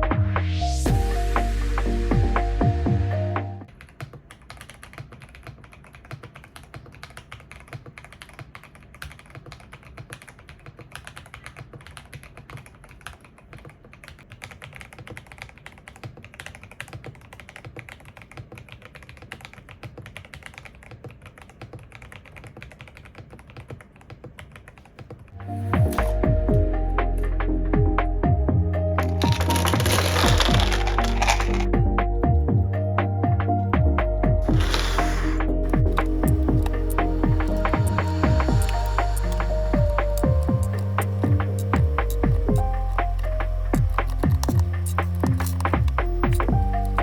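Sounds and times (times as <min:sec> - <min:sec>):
mechanical keyboard typing: 0:03.6 - 0:25.3, 0:29.0 - 0:31.8, 0:34.4 - 0:47.0.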